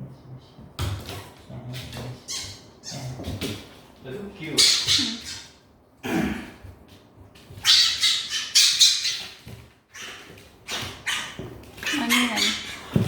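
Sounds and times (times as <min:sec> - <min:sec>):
fox squawking calls: 0:02.3 - 0:03.2, 0:04.6 - 0:05.6, 0:07.6 - 0:12.9.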